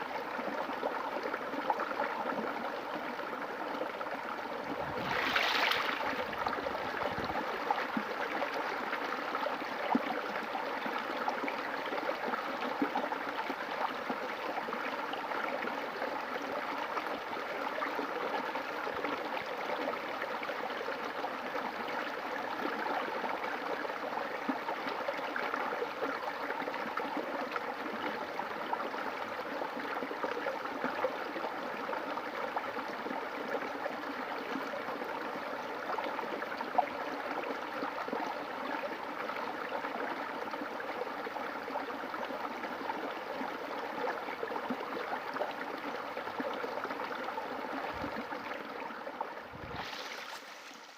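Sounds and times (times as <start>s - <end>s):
river water flowing: 0.0s - 22.7s, 25.7s - 50.9s
small water splashes: 4.7s - 8.1s, 49.2s - 50.9s.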